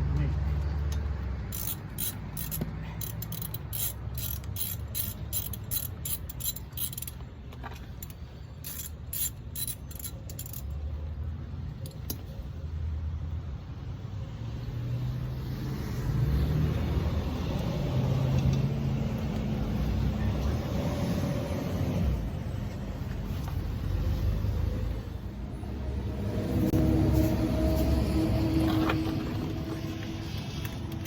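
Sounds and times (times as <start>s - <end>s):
hand tools clicking on metal: 0.9s - 10.8s
low vehicle rumble: 12.4s - 31.0s.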